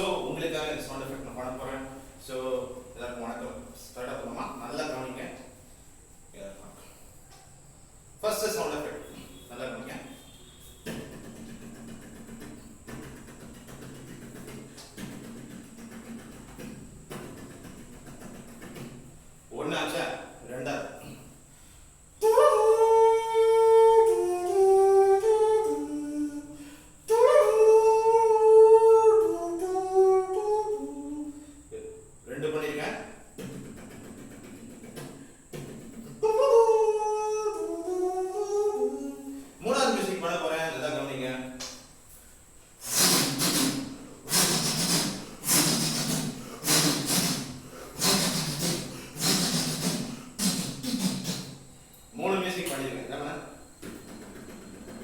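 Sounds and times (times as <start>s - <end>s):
man making breathy hissing bursts: 20.9s - 22.2s, 26.0s - 27.1s, 39.0s - 39.7s, 42.1s - 51.9s
man humming a tune: 22.2s - 32.1s, 36.0s - 39.5s, 42.8s - 51.6s.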